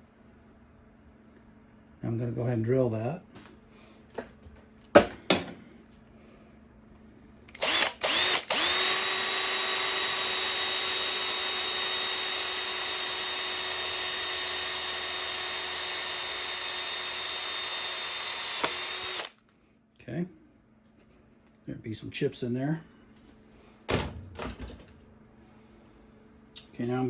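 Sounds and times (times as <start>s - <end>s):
electric drill whining: 7.5s - 19.4s.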